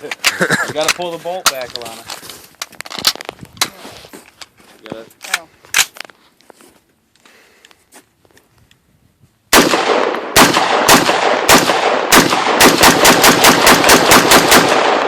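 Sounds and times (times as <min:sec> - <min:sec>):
rifle shots: 0:09.5 - 0:15.0.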